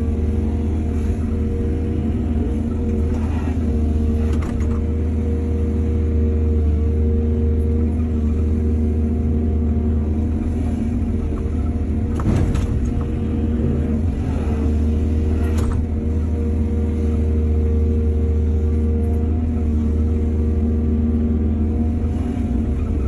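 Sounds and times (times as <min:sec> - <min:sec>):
excavator diesel engine running: 0:00.0 - 0:23.0
excavator clatter: 0:00.5 - 0:05.1, 0:11.1 - 0:16.1.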